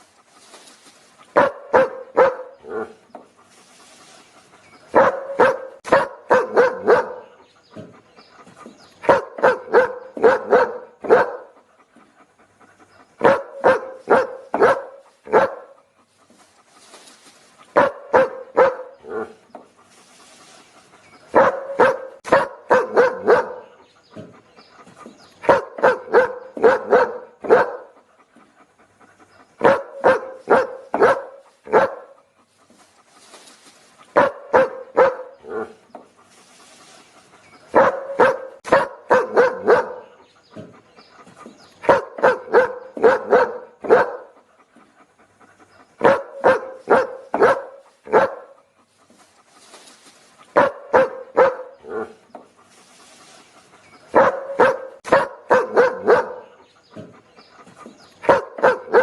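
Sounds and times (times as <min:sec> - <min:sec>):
dog barking: 0:01.4 - 0:03.0, 0:04.9 - 0:07.4, 0:09.0 - 0:11.6, 0:13.2 - 0:15.8, 0:17.8 - 0:19.4, 0:21.3 - 0:23.8, 0:25.4 - 0:28.0, 0:29.6 - 0:32.2, 0:34.1 - 0:35.8, 0:37.7 - 0:40.7, 0:41.8 - 0:44.4, 0:46.0 - 0:48.6, 0:50.5 - 0:52.2, 0:54.1 - 0:57.1, 0:58.2 - 0:59.0.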